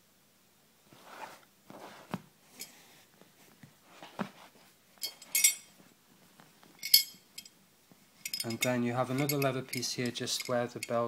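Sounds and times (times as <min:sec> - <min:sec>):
fabric belt rustling: 0:00.9 - 0:07.5
metal belt buckle jingling: 0:05.0 - 0:05.8, 0:06.8 - 0:07.6, 0:08.2 - 0:11.0.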